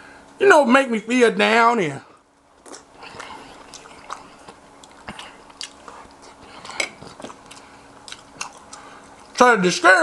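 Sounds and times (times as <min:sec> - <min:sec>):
man chewing with wet smacks: 0:02.4 - 0:09.4.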